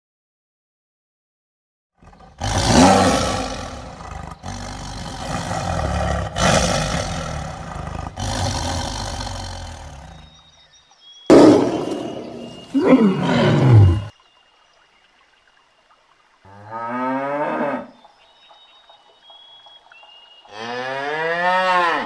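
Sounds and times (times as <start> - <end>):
lion roaring: 2.0 - 10.4, 11.3 - 14.1.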